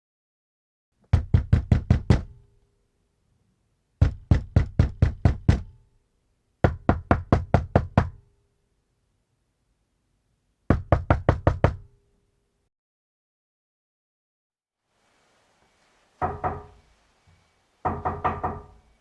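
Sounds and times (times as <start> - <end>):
rapid knocking on a door: 1.1 - 2.4, 4.0 - 5.8, 6.6 - 8.2, 10.7 - 11.9, 16.2 - 16.8, 17.8 - 18.8.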